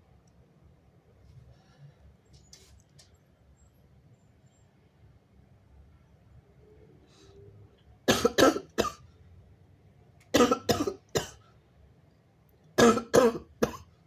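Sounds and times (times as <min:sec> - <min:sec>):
person coughing: 0:08.1 - 0:09.0, 0:10.4 - 0:11.4, 0:12.8 - 0:13.9.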